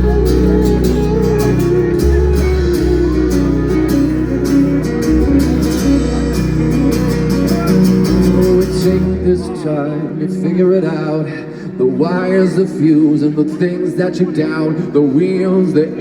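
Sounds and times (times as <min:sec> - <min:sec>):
rock band playing: 0:00.0 - 0:14.8.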